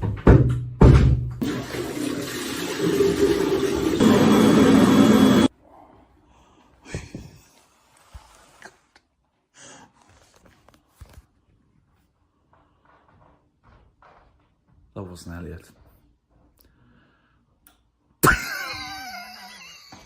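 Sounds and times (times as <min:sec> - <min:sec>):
toilet flushing: 0:01.4 - 0:05.5
faint knocks and rustles: 0:10.0 - 0:15.0.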